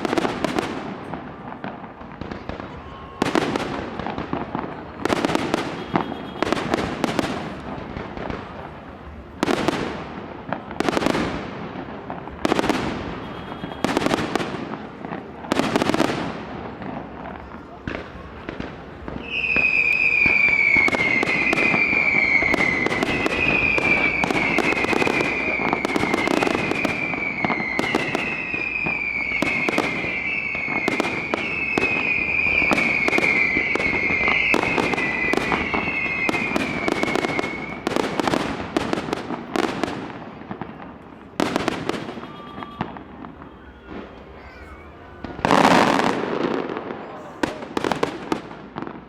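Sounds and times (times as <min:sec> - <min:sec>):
firework bangs crackling: 0:00.0 - 0:49.0
firework whistles: 0:02.3 - 0:04.4, 0:05.0 - 0:07.6, 0:12.4 - 0:14.8, 0:17.9 - 0:40.0, 0:40.6 - 0:48.4.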